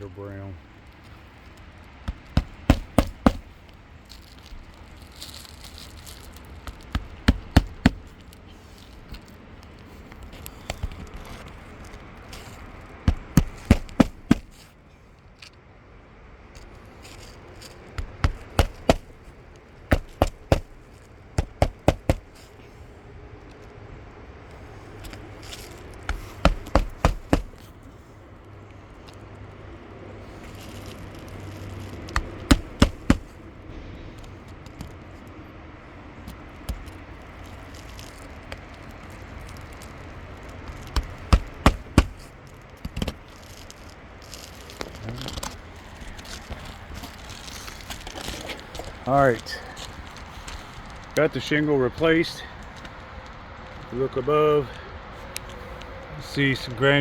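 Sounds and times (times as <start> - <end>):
hammer driving nails into shingle: 2.1 - 3.6, 6.6 - 8.3, 10.4 - 11.5, 13.1 - 14.7, 18.0 - 19.3, 19.9 - 22.5, 25.0 - 27.7, 30.7 - 33.4, 40.7 - 43.7.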